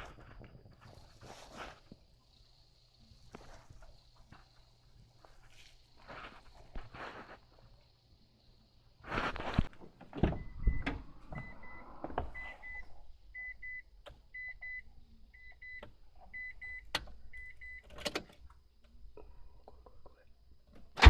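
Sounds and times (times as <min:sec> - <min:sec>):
rustling: 0:00.0 - 0:02.4, 0:03.1 - 0:07.8, 0:09.0 - 0:09.8.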